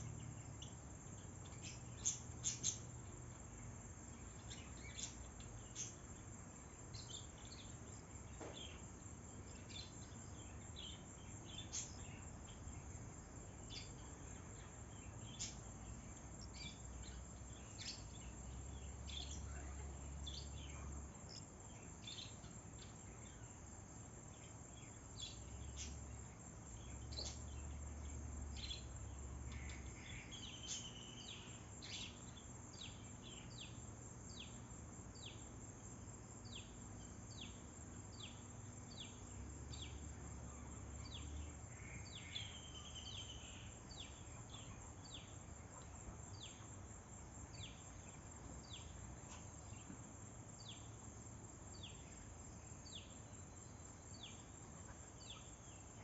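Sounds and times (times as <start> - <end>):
high insect hum: 0.0 - 56.0.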